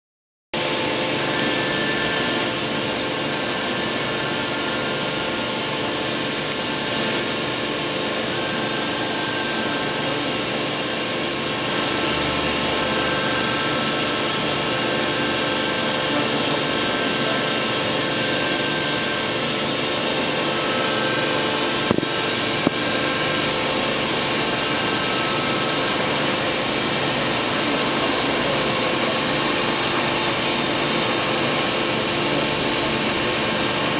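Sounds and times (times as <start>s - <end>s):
faint machine whines: 0.6s - 33.9s
machining centre whirring: 0.6s - 33.9s.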